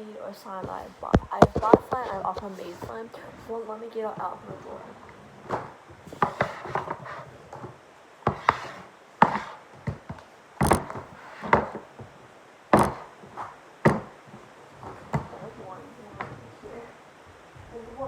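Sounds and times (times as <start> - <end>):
containers knocking and clattering: 0.7 - 3.0, 5.5 - 12.1, 12.7 - 16.6.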